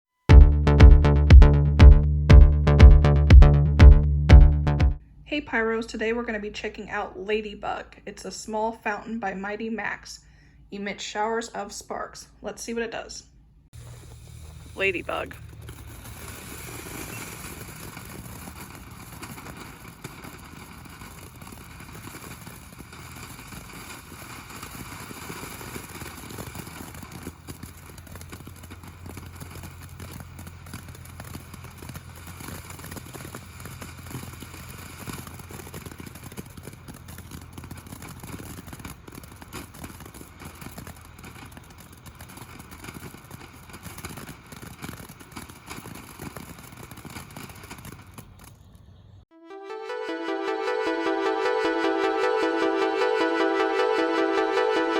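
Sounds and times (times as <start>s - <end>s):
firework fountain hissing and crackling: 13.8s - 48.2s.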